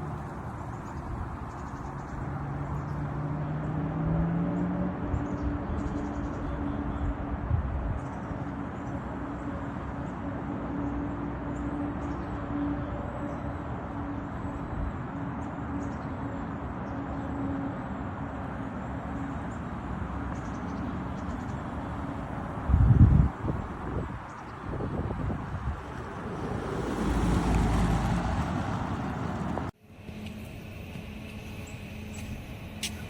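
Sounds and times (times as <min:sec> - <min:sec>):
road and wind noise: 0:00.0 - 0:33.0
electric scooter motor whine: 0:19.8 - 0:33.0.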